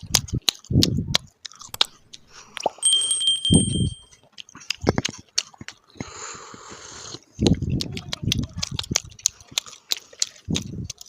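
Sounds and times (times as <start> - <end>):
crunchy eating: 0.0 - 2.8, 4.1 - 11.0
wet mouth clicks: 0.0 - 2.8, 4.3 - 11.0
high ringing tone: 2.8 - 4.2
soft chewing thuds: 4.0 - 11.0.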